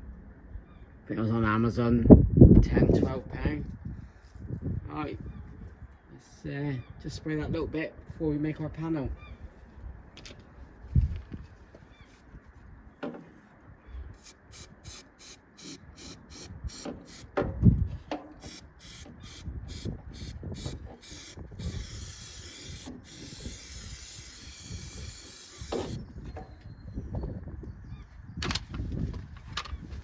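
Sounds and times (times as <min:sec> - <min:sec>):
aerosol can shaking: 0:14.2 - 0:17.3, 0:18.5 - 0:26.0
spray hiss: 0:18.5 - 0:26.0.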